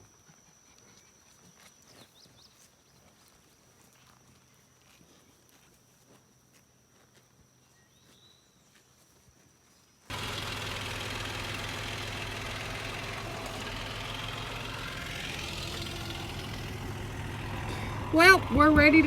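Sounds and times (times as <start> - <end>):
vehicle engine running: 10.1 - 19.0.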